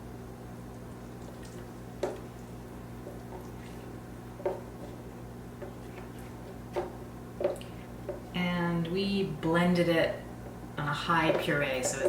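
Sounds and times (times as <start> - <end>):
steady low hum: 0.0 - 12.0
wet plops and knocks: 1.4 - 2.3.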